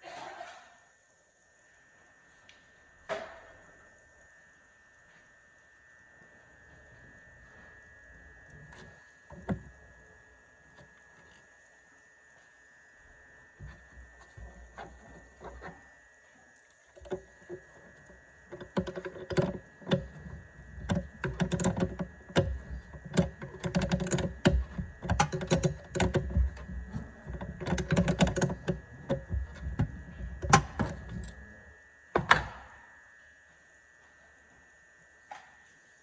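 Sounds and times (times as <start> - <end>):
hand tools clicking and rattling: 18.5 - 31.4.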